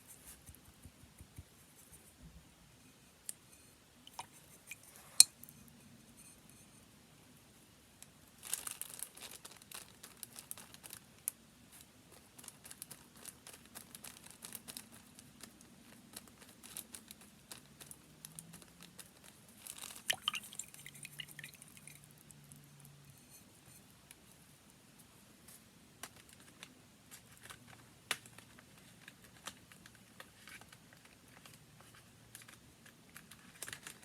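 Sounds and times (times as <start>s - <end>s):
paper rustling and crinkling: 8.4s - 11.0s, 11.7s - 21.2s, 25.4s - 34.0s.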